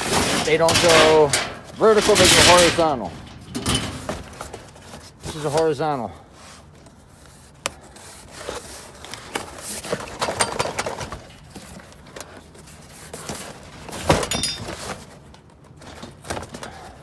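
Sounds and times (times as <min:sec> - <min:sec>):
metal hardware clanking: 0:00.0 - 0:04.8, 0:14.2 - 0:14.8.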